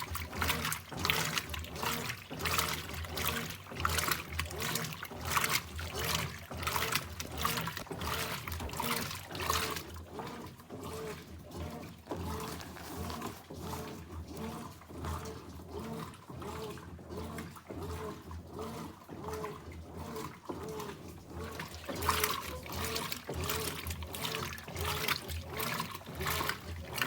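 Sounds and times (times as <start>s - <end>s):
washing machine motor strokes: 0.0s - 27.0s
washing machine sloshing: 0.0s - 27.0s.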